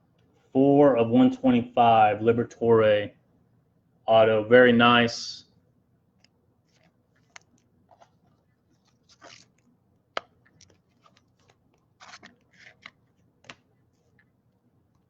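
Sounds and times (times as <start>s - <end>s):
trading cards rustling: 6.6s - 14.3s.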